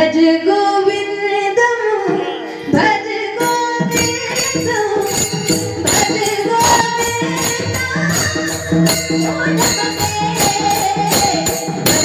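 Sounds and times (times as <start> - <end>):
jingling percussion: 3.4 - 12.0.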